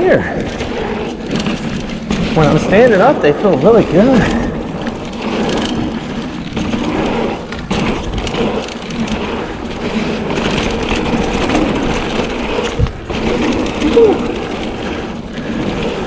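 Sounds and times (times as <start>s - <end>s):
bike clicks and rattles: 0.3s - 16.0s
bike tyres crunching on dirt: 1.0s - 13.5s.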